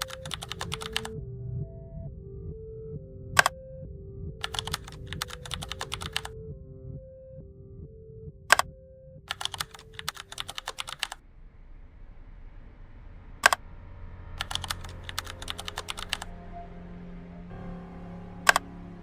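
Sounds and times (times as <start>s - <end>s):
keyboard typing clicks: 0.0s - 1.2s, 4.4s - 6.3s, 8.5s - 8.7s, 9.3s - 11.2s, 14.4s - 16.3s.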